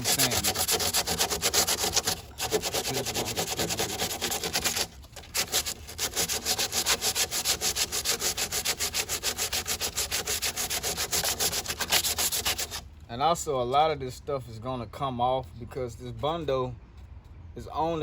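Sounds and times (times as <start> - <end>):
sandpaper rubbing body filler: 0.0 - 12.8.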